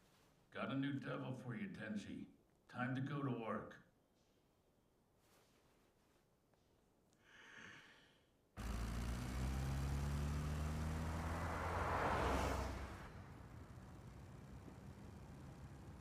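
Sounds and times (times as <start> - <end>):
soft sigh: 7.2 - 8.3.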